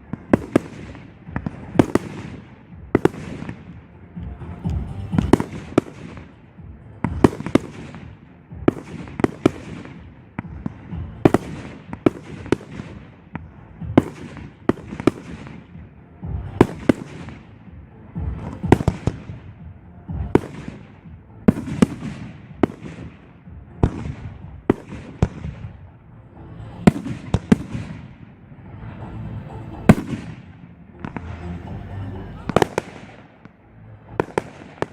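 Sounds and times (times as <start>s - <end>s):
firework bangs: 0.0s - 26.0s, 26.6s - 31.6s, 32.4s - 34.9s
low rumbling echo: 0.0s - 34.9s.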